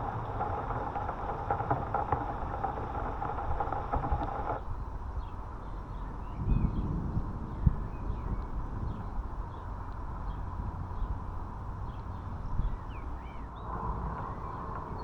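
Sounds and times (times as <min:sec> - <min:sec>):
low rumble: 0:00.0 - 0:04.6
rain pattering: 0:00.0 - 0:04.6.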